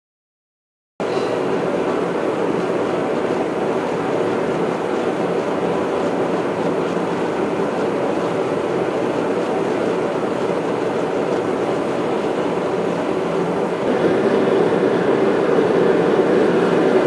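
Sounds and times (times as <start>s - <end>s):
forge rushing: 13.9s - 17.0s.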